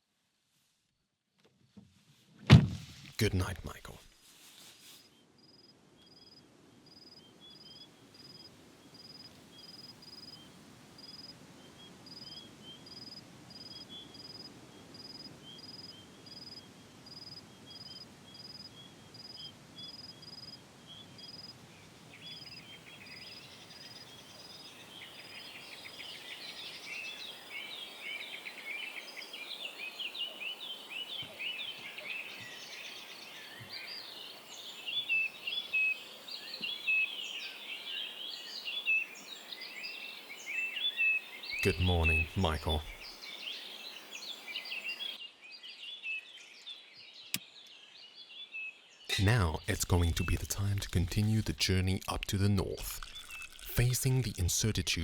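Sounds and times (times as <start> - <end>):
many birds singing: 22.1 - 49.1.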